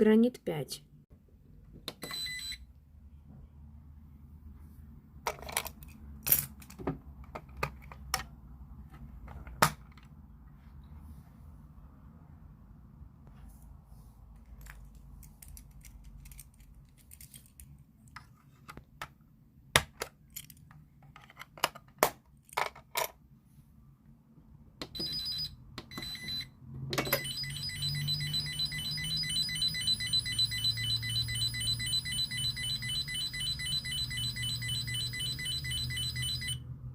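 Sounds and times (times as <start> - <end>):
pulsing high alarm tone: 25.0 - 36.6.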